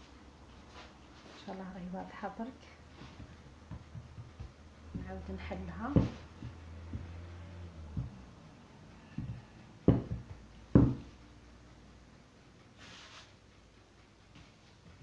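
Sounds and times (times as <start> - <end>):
rolling pin knocking on work surface: 3.2 - 7.3, 7.9 - 8.2, 9.1 - 11.1.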